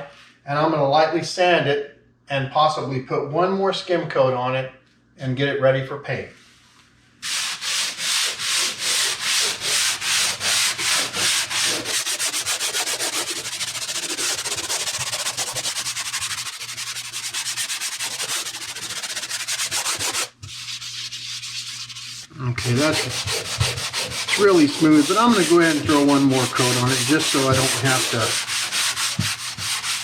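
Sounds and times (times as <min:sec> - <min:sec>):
sandpaper rubbing on drywall compound: 0:07.2 - 0:30.0.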